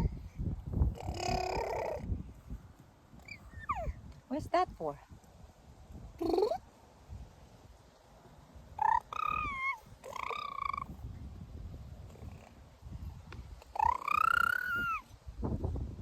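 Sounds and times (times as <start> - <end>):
baby squealing: 1.0 - 2.0, 3.2 - 4.0, 8.8 - 10.9, 13.7 - 15.1.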